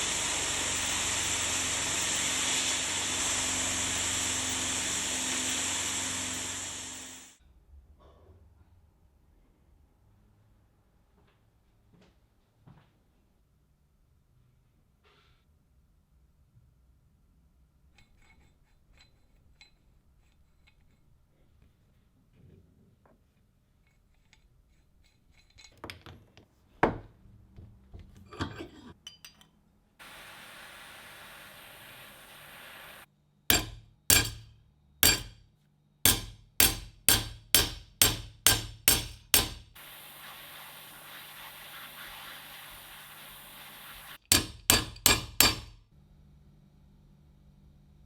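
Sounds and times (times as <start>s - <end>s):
steady hiss: 0.0s - 7.4s, 30.0s - 34.4s, 36.1s - 45.7s
hammer striking metal: 33.5s - 35.4s, 36.1s - 39.8s, 44.2s - 45.8s.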